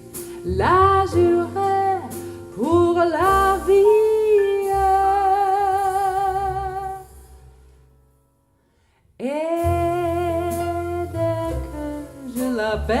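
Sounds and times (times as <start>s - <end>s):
woman singing with vibrato: 0.0s - 7.2s, 9.2s - 13.0s
guitar and bass: 0.0s - 7.8s.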